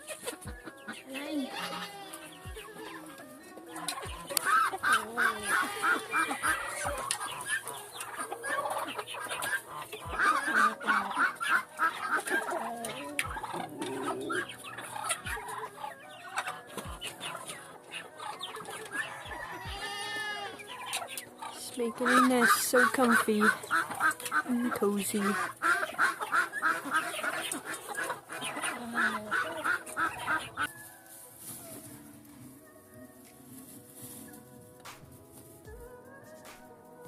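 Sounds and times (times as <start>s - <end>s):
hens clucking: 0.0s - 32.7s.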